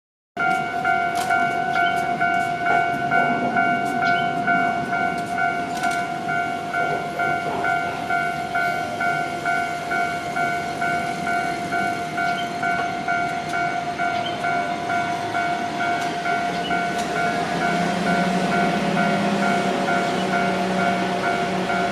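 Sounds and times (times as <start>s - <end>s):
level crossing warning bell: 0.4s - 21.9s.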